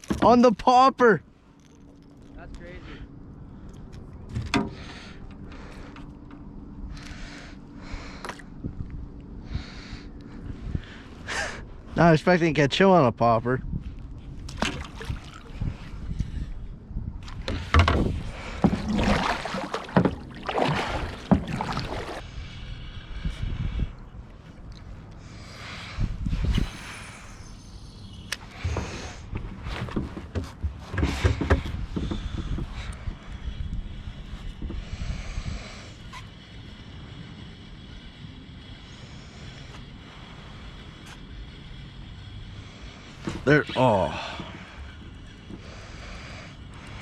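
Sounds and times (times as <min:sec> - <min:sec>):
wind rumbling on microphone: 0:02.3 - 0:47.0
paddle splashing through water: 0:18.6 - 0:22.2.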